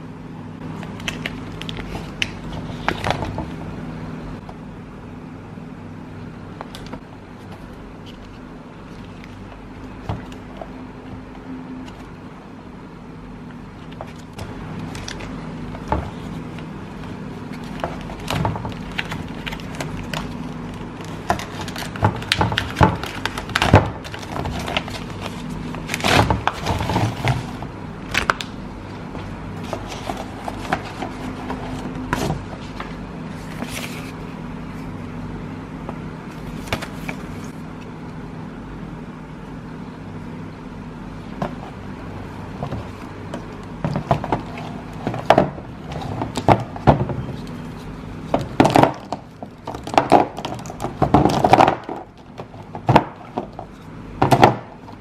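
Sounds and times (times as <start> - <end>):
low hum: 23.0 - 45.8.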